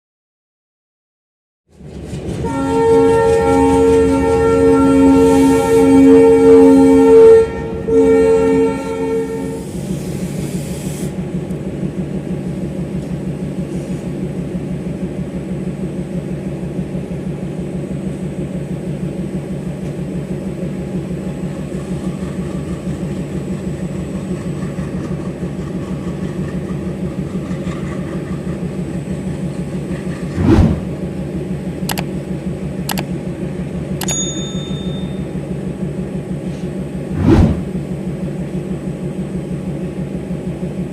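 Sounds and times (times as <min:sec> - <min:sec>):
diesel engine throbbing: 0:01.7 - 0:40.9
locomotive horn: 0:02.4 - 0:09.8.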